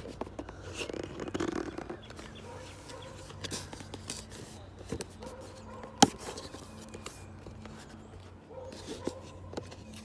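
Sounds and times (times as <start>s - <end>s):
dog barking: 2.4s - 3.2s, 5.2s - 6.0s, 8.5s - 9.3s.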